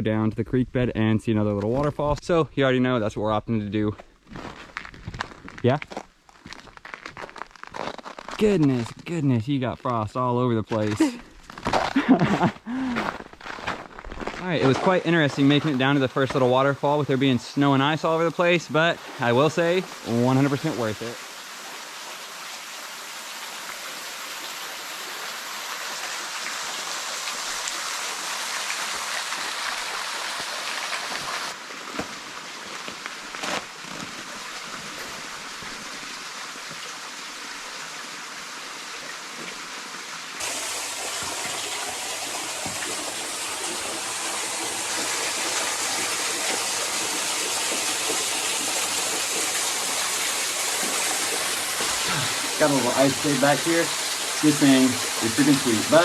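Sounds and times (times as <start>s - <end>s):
small waterfall rushing: 14.6s - 33.4s, 34.2s - 56.0s.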